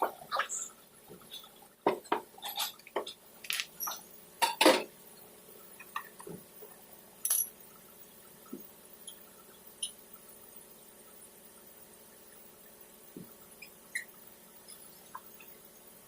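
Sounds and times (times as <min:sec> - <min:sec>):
small hard objects clinking: 0:03.4 - 0:03.8.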